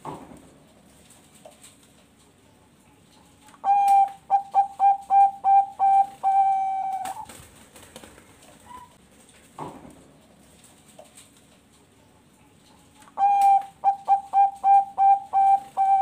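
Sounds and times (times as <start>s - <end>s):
dove cooing: 3.5s - 7.4s, 13.1s - 16.0s.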